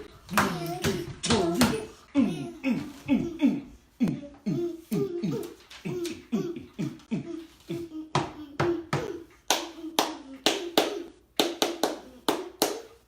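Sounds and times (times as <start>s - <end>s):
hands slapping a rhythm: 0.0s - 1.9s, 8.1s - 13.0s.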